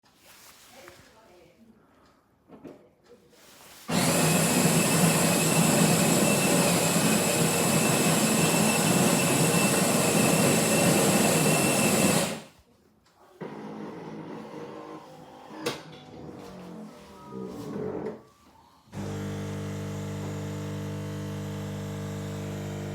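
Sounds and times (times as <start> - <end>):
coffee grinder whirring: 3.9 - 12.5, 19.0 - 22.9
machine hum: 19.0 - 22.9.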